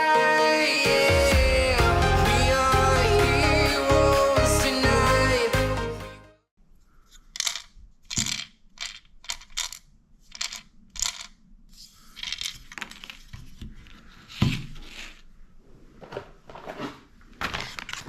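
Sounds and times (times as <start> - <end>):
rustling and scraping: 7.0 - 18.0.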